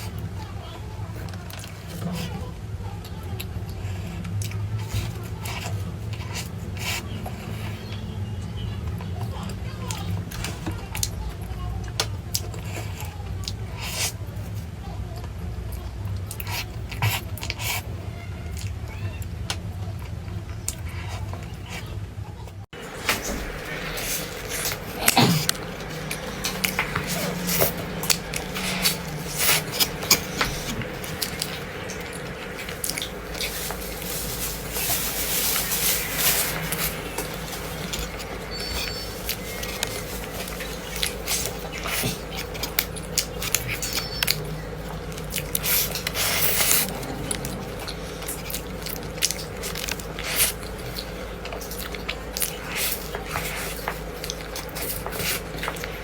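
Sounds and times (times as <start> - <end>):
biting and chewing: 22.8 - 56.0.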